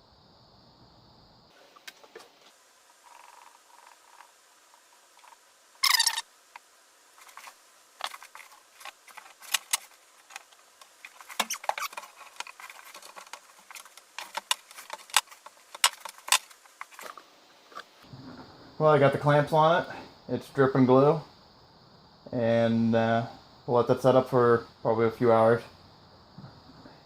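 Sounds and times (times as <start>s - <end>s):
clicks and knocks of metal and wood: 5.1s - 18.0s
clamp squeak: 5.8s - 6.2s.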